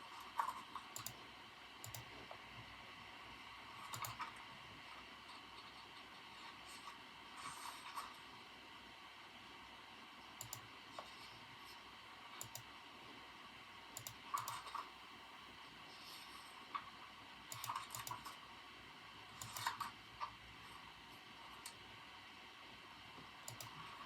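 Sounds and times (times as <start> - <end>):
computer keyboard typing: 0.5 - 1.2, 1.8 - 2.2, 3.8 - 4.3, 10.4 - 10.7, 12.4 - 12.7, 14.0 - 14.9, 17.5 - 18.4, 19.4 - 20.0, 23.4 - 23.9.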